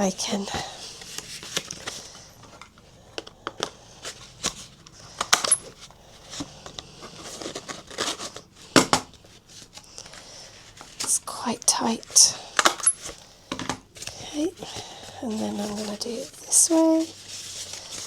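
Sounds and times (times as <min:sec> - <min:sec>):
paper rustling: 0:00.4 - 0:02.8, 0:03.6 - 0:11.3, 0:14.0 - 0:18.0.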